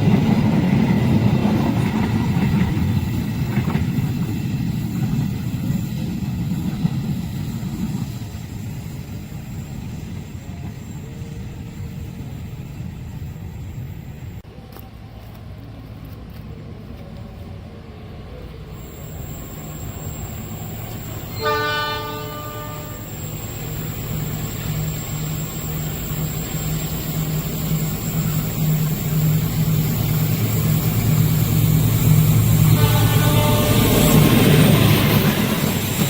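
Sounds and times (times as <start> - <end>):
diesel locomotive engine hum: 0.0 - 36.0
train horn blast: 21.2 - 23.3, 32.6 - 34.4.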